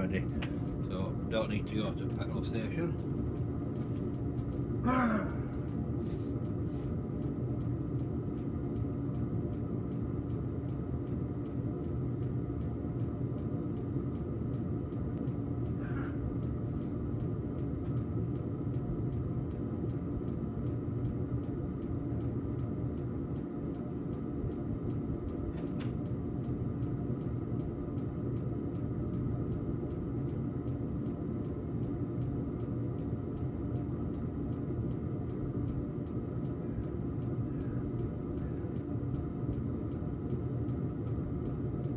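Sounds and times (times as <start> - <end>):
fan hum: 0.0 - 41.9
heater combustion rumble: 0.0 - 41.9.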